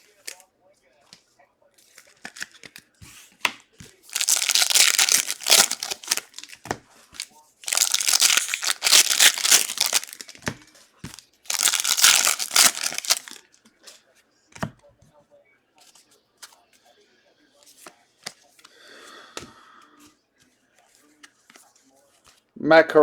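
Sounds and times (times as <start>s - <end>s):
plastic wrappers crinkling: 4.1s - 13.4s.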